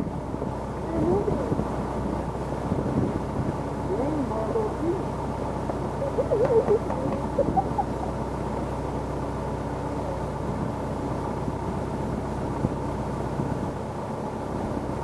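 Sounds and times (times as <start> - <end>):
engines idling: 0.0 - 15.0.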